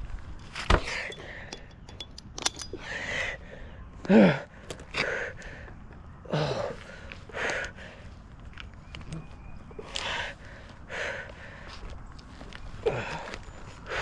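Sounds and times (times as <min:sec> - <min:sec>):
man gasping breaths: 0:10.0 - 0:11.9.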